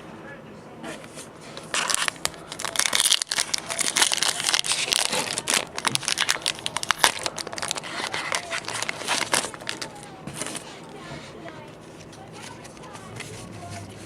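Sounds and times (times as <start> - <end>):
foil wrapper crinkling: 1.6 - 10.7.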